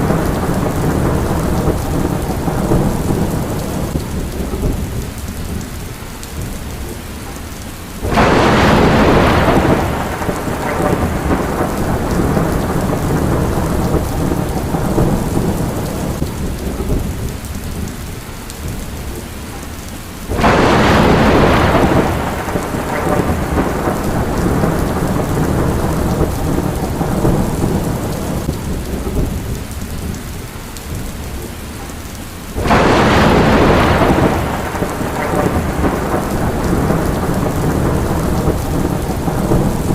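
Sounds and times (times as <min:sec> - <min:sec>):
thunder rumbling: 0:00.0 - 0:07.4, 0:08.0 - 0:19.4, 0:20.2 - 0:39.9
heavy rain: 0:00.0 - 0:39.9.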